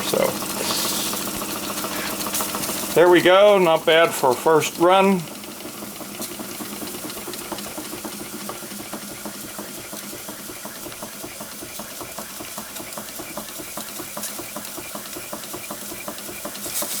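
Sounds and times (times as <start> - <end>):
steam engine clicking: 0.0 - 17.0
steam hissing: 0.0 - 17.0.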